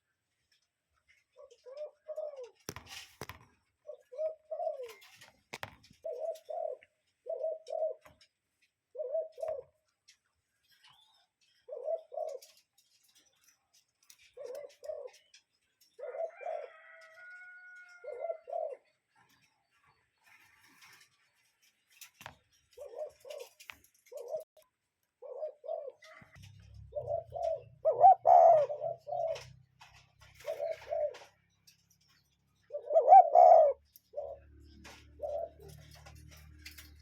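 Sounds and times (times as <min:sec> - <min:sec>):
cuckoo calling: 0:01.4 - 0:02.7, 0:03.9 - 0:05.3, 0:06.0 - 0:08.2, 0:08.9 - 0:09.8, 0:10.9 - 0:12.6, 0:15.9 - 0:17.2, 0:17.9 - 0:18.8, 0:22.8 - 0:24.6, 0:25.2 - 0:29.6, 0:30.2 - 0:31.4, 0:32.6 - 0:37.0.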